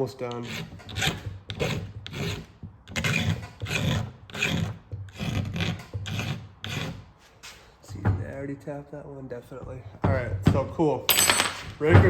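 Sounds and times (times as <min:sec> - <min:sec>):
hand file rasping on chainsaw chain: 0:00.0 - 0:07.6.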